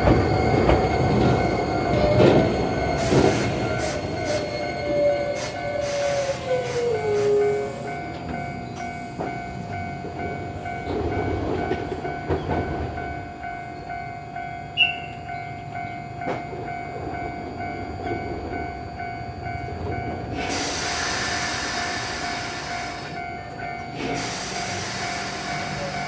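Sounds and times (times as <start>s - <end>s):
train wheels clanking on rail joints: 0.0s - 13.9s, 19.6s - 26.0s
level crossing alarm ringing: 0.0s - 26.0s
loud hiss: 20.4s - 23.2s, 24.0s - 26.0s.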